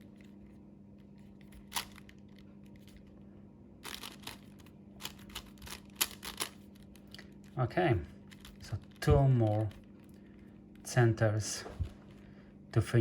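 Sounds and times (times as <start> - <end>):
faint steady hum: 0.0 - 13.0
puzzle cube clicking: 3.8 - 7.2.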